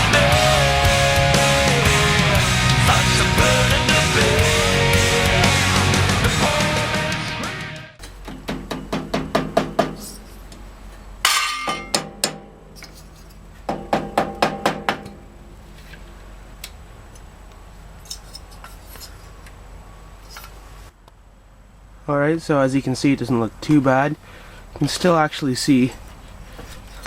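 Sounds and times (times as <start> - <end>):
ringing metal clank: 11.2 - 14.4.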